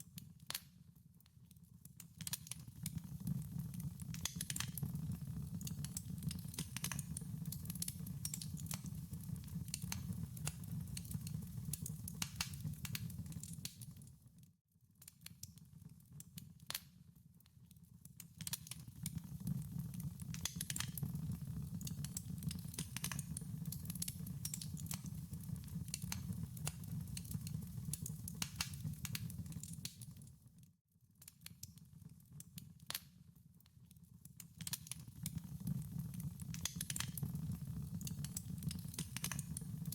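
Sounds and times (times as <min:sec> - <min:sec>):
logs crackling and popping: 0:02.2 - 0:14.0, 0:18.4 - 0:30.2, 0:34.6 - 0:39.9.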